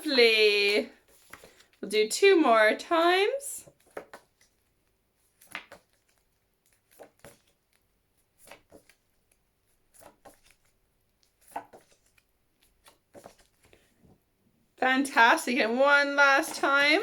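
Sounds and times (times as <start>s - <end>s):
paper cards rustling: 0.6s - 1.9s, 3.6s - 14.0s, 15.2s - 17.0s.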